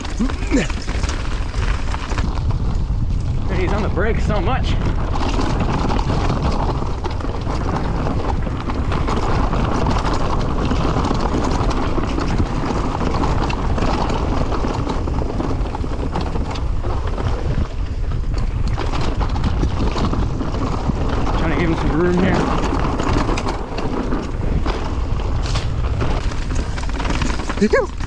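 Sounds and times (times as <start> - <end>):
bike rattling on rough trail: 0.0 - 28.0
wind buffeting microphone: 0.0 - 28.0.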